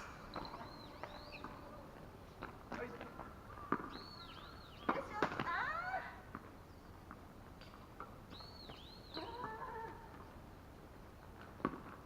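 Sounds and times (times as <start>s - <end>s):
bird whistling faintly: 0.0s - 1.7s, 3.5s - 5.1s, 8.3s - 9.5s.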